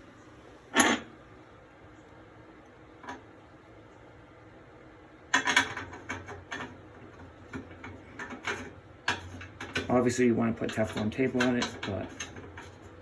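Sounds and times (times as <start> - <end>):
plumbing fittings clicking and rattling: 7.5 - 12.8.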